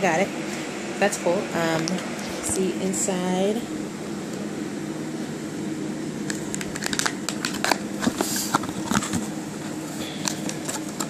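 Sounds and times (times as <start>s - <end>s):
steady low hum: 0.0s - 11.0s
package crinkling and crackling: 6.2s - 9.3s.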